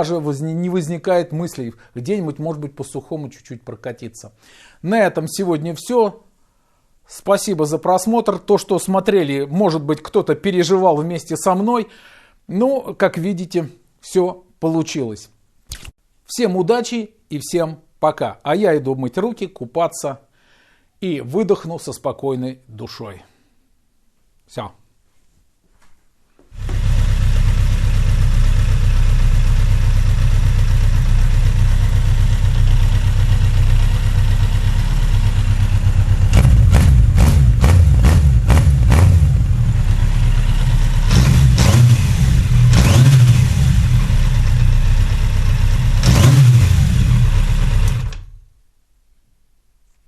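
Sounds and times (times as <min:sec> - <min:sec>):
motorcycle engine idling: 0:26.6 - 0:42.8, 0:43.4 - 0:46.0.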